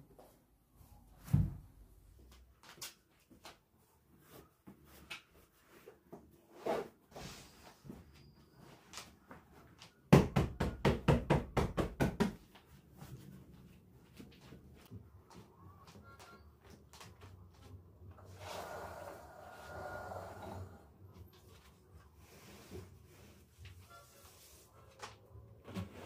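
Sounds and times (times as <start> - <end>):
household objects knocking: 10.1 - 12.4.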